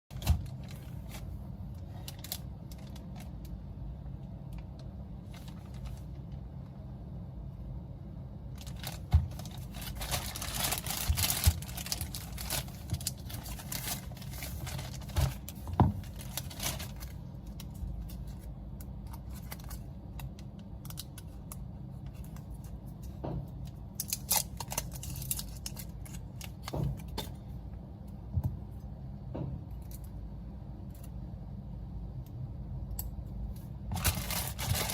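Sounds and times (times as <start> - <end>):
steady low hum: 0.1 - 34.9.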